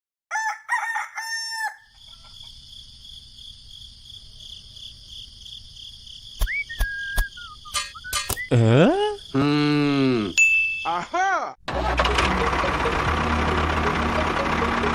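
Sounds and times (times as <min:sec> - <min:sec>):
rooster crowing: 0:00.3 - 0:02.4
sharp clicks: 0:06.4 - 0:08.5
short whistle-like tone: 0:06.4 - 0:08.6.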